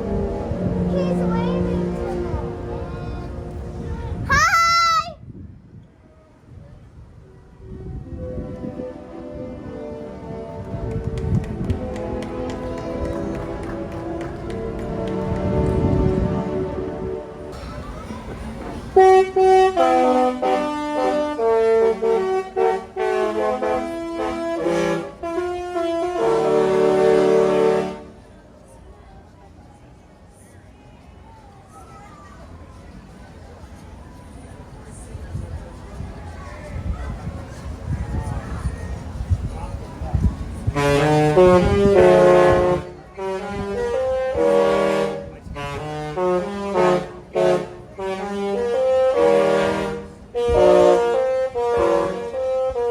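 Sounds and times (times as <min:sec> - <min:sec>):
ship's musical horn playing a tune: 0:00.0 - 0:03.8, 0:07.7 - 0:17.5, 0:19.0 - 0:28.2, 0:40.6 - 0:52.9.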